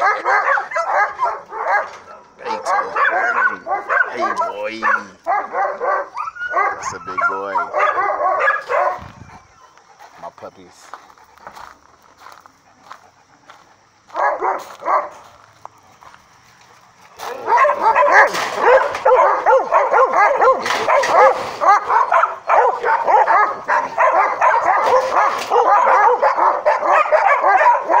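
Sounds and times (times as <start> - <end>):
puppies yelping and whining: 6.1 - 7.8.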